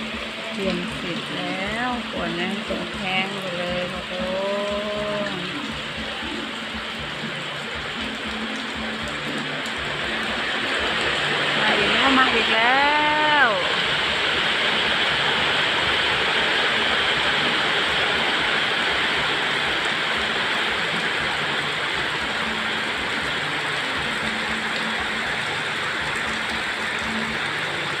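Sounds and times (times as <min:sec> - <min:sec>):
heavy rain pouring: 0:00.0 - 0:28.0.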